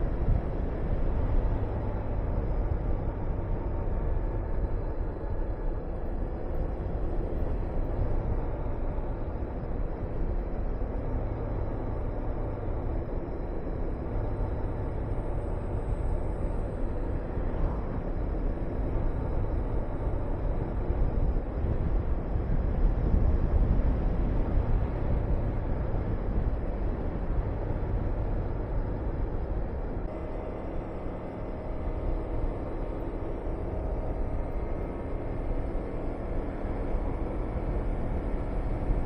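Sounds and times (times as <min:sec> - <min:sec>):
wind rushing over microphone: 0:00.0 - 0:39.0.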